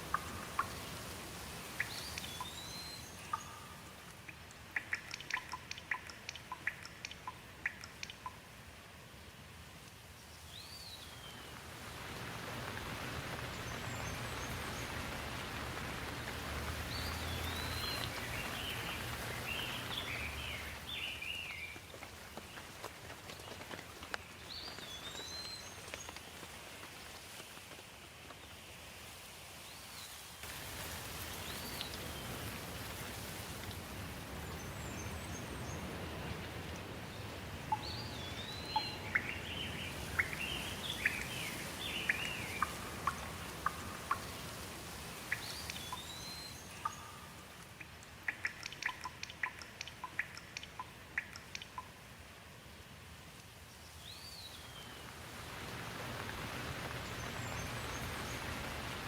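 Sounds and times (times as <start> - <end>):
steady rain: 0.0 - 59.0
birds chirping: 10.5 - 22.7, 34.4 - 44.5, 45.2 - 51.9.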